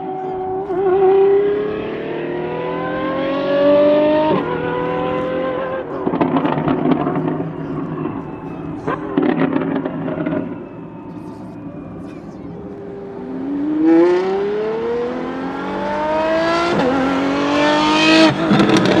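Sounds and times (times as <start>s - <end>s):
car engine accelerating hard: 0.0s - 10.7s, 12.0s - 19.0s
exhaust crackles and pops: 6.0s - 11.4s, 18.2s - 19.0s.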